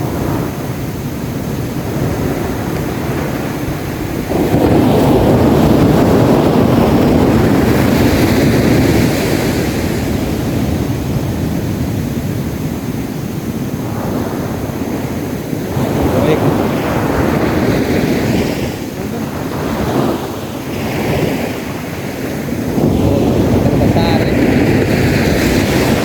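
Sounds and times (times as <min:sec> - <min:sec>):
sea waves breaking: 0:00.0 - 0:26.0
wind rumbling on microphone: 0:00.0 - 0:26.0.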